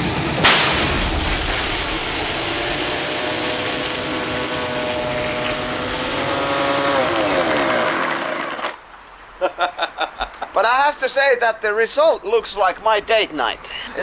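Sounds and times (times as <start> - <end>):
chainsaw running: 0.0 - 8.8
loud hiss: 0.0 - 8.8.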